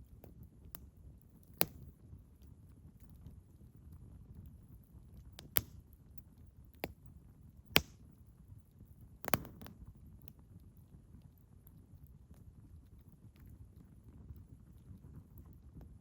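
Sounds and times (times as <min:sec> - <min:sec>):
campfire low rumble: 0:00.0 - 0:16.0
firewood crackling pops: 0:01.5 - 0:01.9, 0:05.4 - 0:05.9, 0:07.6 - 0:08.1, 0:09.2 - 0:09.8.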